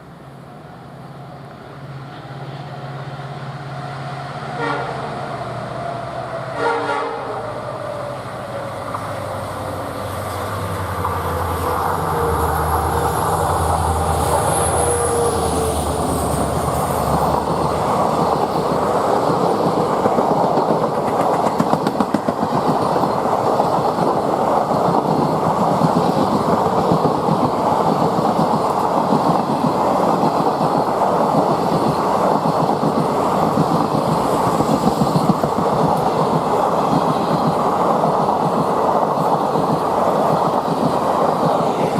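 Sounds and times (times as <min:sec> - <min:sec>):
diesel locomotive engine: 0:00.0 - 0:41.9
train wheels clattering on rails: 0:08.8 - 0:41.9.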